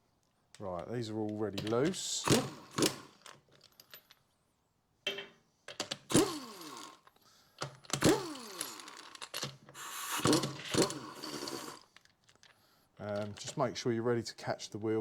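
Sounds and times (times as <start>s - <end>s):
metallic clicks and clatter: 7.1s - 13.7s.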